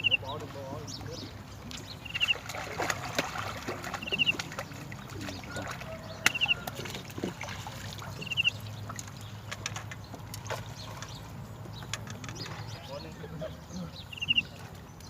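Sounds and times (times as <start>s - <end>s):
bird trilling call: 0.0s - 2.4s, 3.9s - 6.9s, 8.0s - 8.8s, 12.3s - 14.6s.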